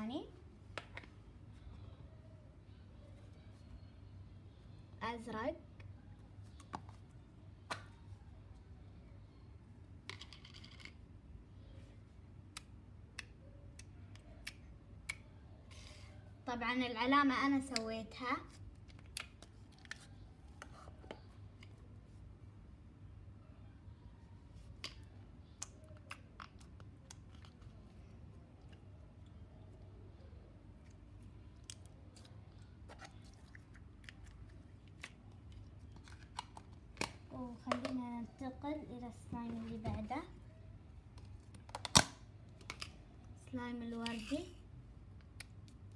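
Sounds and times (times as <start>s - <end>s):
squishy rustle: 24.3s - 37.6s.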